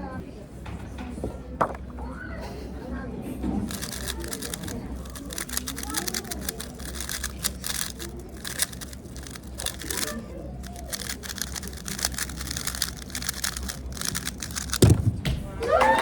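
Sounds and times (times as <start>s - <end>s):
puzzle cube plastic clicks: 3.7s - 15.0s.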